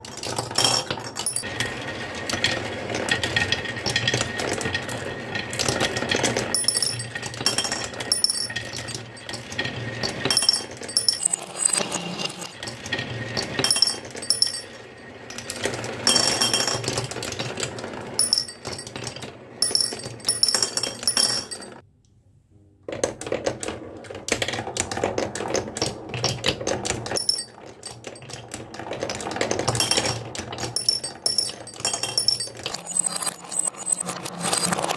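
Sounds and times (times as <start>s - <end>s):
small hard parts clinking: 0.0s - 1.5s, 6.5s - 12.8s, 13.6s - 14.8s, 18.2s - 21.8s, 27.2s - 34.9s.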